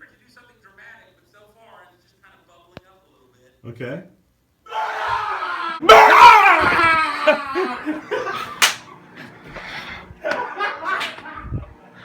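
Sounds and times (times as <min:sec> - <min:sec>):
person yelling: 0:04.7 - 0:07.9
person laughing: 0:06.6 - 0:09.0, 0:10.2 - 0:11.7
sharp smack: 0:08.6 - 0:08.8.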